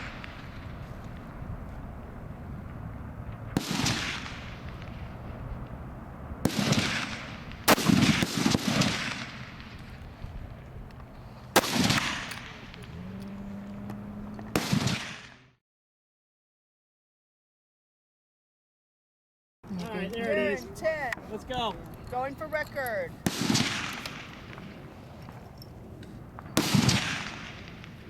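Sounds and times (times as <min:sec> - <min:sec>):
rifle shots with ringing echo: 0:00.0 - 0:10.5, 0:11.5 - 0:15.5, 0:23.1 - 0:28.0.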